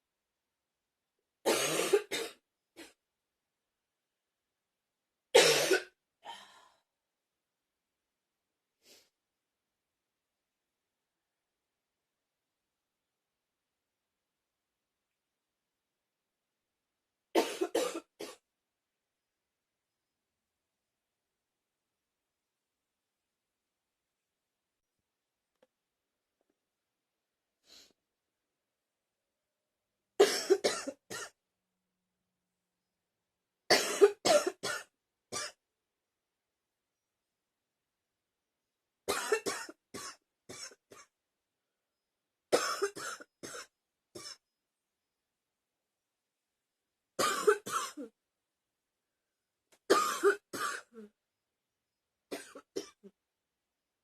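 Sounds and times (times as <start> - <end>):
person coughing: 1.5 - 3.0, 5.4 - 6.0, 17.4 - 18.4, 30.2 - 31.4, 33.7 - 35.6, 42.6 - 44.4, 47.2 - 48.1, 49.9 - 51.1, 52.3 - 53.1
faint breath: 6.2 - 6.9.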